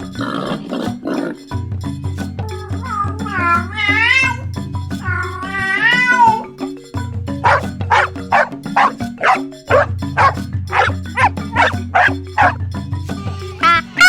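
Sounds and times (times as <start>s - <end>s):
background music with bass line: 1.6s - 14.0s
dog barking: 7.4s - 12.6s.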